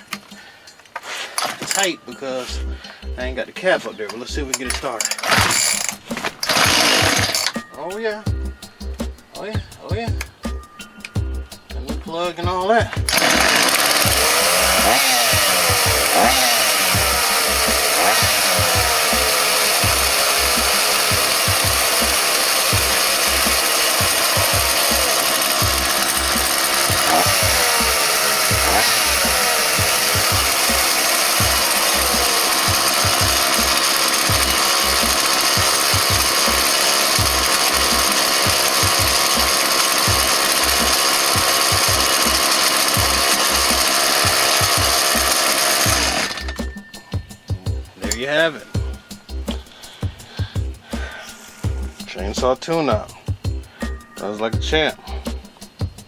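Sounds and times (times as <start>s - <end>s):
chainsaw running and revving: 5.1s - 7.7s, 13.0s - 46.8s.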